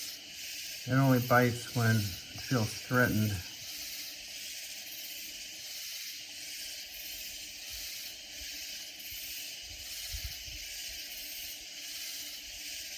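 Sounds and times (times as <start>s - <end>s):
katydids rasping chorus: 0.0s - 4.2s.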